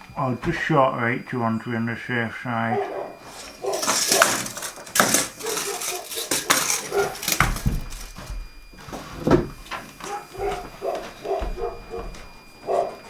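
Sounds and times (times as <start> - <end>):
clattering knocks of materials: 3.2 - 12.4.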